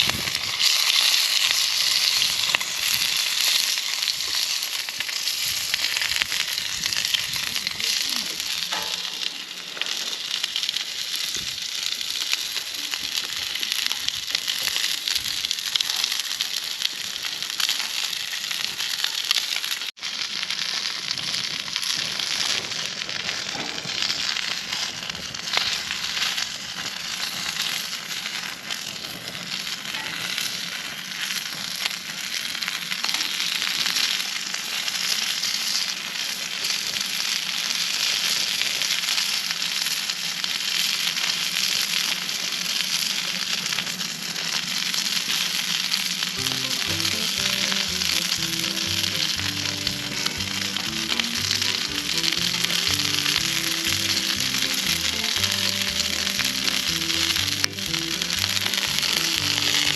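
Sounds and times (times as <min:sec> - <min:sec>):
food sizzling in a pan: 0:00.0 - 0:59.9
background music: 0:46.4 - 0:59.9.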